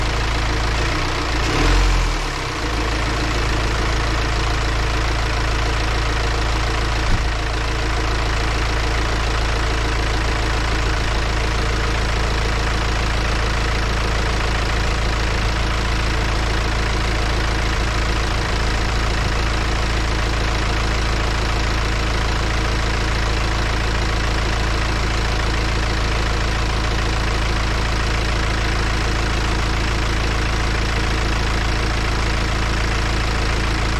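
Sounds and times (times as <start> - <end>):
diesel engine idling: 0.0 - 33.9.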